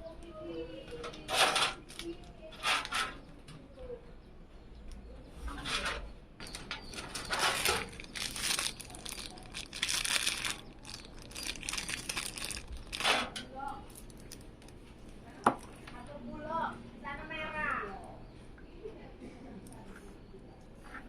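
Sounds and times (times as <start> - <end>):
packaging crinkling: 1.5 - 2.4, 6.9 - 14.8.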